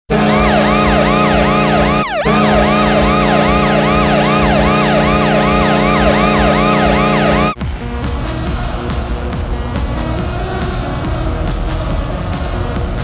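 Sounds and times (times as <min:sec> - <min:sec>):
arena goal horn: 0:00.1 - 0:07.6
whooping siren: 0:00.1 - 0:07.6.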